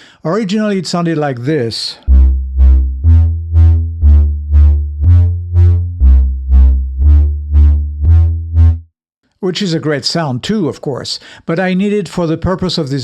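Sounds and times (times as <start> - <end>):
deep synth bass line: 2.1 - 8.9.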